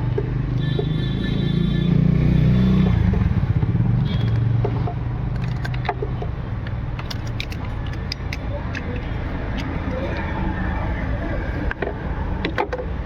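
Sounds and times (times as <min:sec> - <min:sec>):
vehicle engine rumbling: 0:00.0 - 0:13.0
light clicks and clatter: 0:05.3 - 0:10.2.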